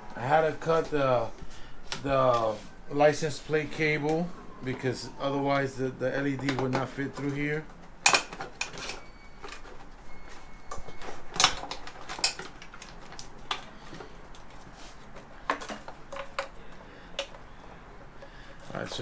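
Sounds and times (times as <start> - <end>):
tools and parts clinking: 5.6 - 19.0.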